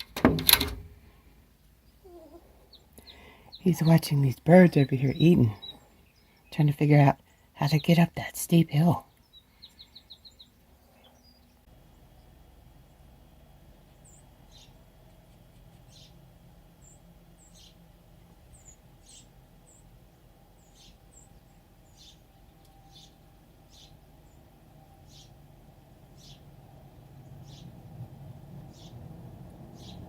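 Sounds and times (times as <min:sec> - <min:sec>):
songbirds chirping: 0:00.0 - 0:30.0.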